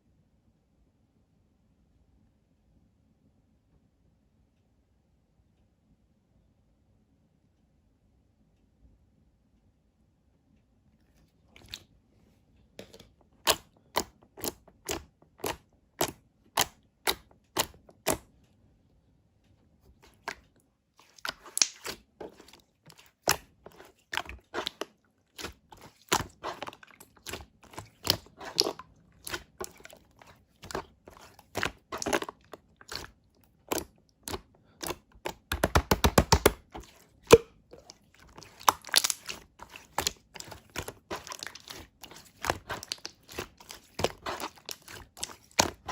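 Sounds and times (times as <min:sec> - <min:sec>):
squishy slime crunches: 0:12.8 - 0:18.2, 0:20.0 - 0:45.9
slime clicking and crackling: 0:13.4 - 0:18.2, 0:21.0 - 0:45.9.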